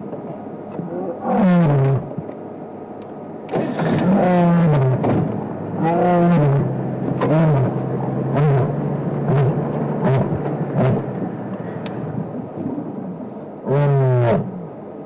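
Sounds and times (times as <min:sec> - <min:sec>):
lioness grunting calls: 0:00.8 - 0:02.1, 0:03.6 - 0:05.0
lioness roaring: 0:00.8 - 0:02.1, 0:03.6 - 0:05.0, 0:05.8 - 0:11.2, 0:12.4 - 0:14.7.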